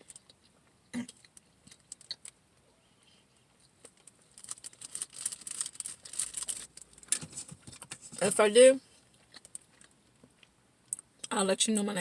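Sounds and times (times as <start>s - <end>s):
chewing and mouth clicks: 0.0s - 2.4s, 9.0s - 11.3s.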